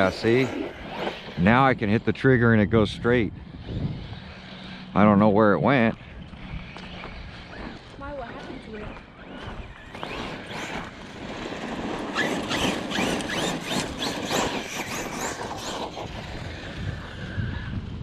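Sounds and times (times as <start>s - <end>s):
electric motor whining: 0.0s - 18.0s
tyres crunching on gravel: 5.1s - 16.4s.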